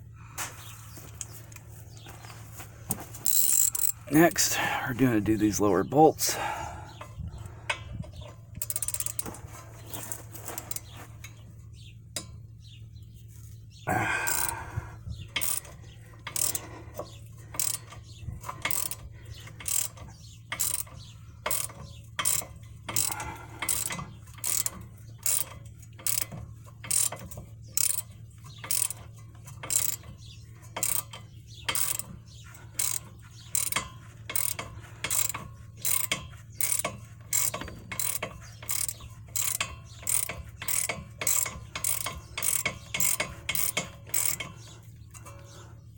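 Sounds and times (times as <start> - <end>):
ratchet wrench clicking: 3.2 - 4.0, 8.6 - 9.3, 14.3 - 14.6, 15.4 - 16.7, 17.5 - 30.1, 30.8 - 32.1, 32.8 - 44.5.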